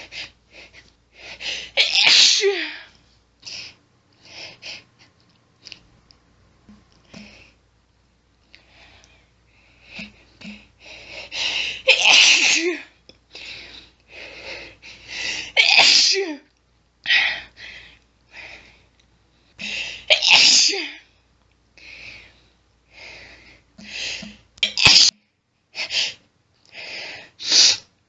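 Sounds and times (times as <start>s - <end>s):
woman sneezing: 1.8s - 2.8s, 11.9s - 12.8s, 20.1s - 21.0s
catching breaths: 21.8s - 24.5s.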